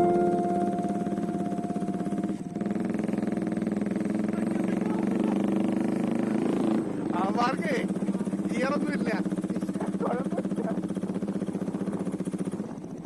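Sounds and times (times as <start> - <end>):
held musical tone: 0.0 - 5.2
motorcycle engine thumping: 0.0 - 13.0.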